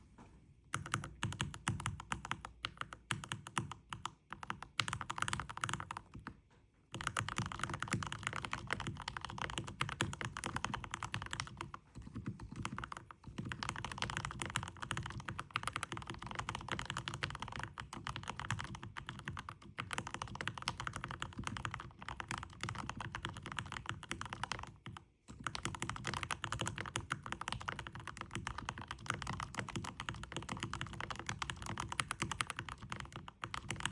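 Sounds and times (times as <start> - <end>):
fast mechanical keyboard typing: 0.7 - 33.9.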